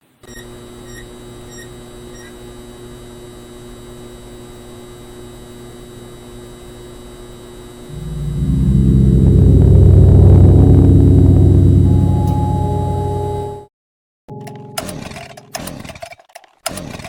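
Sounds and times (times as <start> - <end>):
electrical hum: 0.3 - 13.7
loud low pulsing drone: 7.9 - 13.7.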